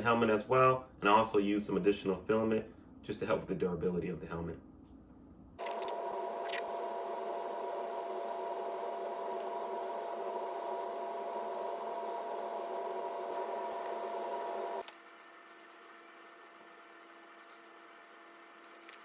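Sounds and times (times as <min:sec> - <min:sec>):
faint hum: 0:00.0 - 0:19.0
small motor whirring: 0:05.6 - 0:19.0.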